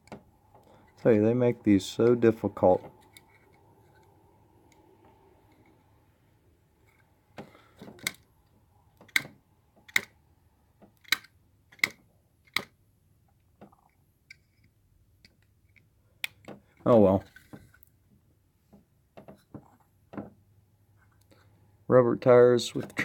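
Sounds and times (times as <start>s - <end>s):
fingernails clicking on toy car hood: 7.4s - 8.2s, 9.0s - 10.2s, 10.8s - 12.8s.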